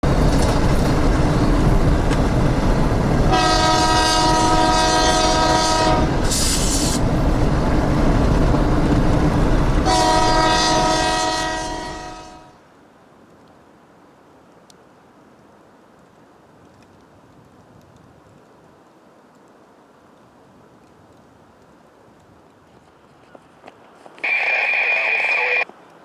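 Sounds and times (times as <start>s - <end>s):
freight train rumbling past: 0.0s - 12.6s
train air horn blasts: 3.3s - 7.0s, 9.8s - 12.6s
short high hiss: 6.2s - 7.0s.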